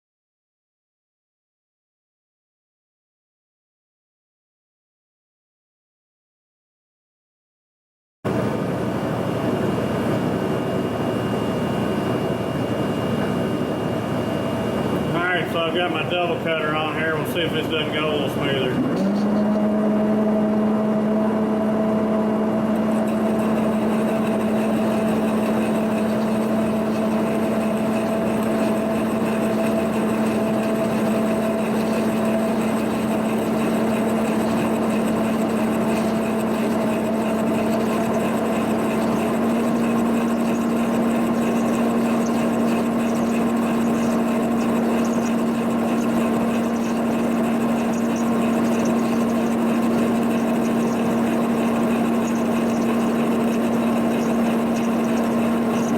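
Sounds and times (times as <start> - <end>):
boring machine motor hum: 8.3 - 55.9
cutter cutting metal: 15.6 - 19.7, 22.8 - 55.9.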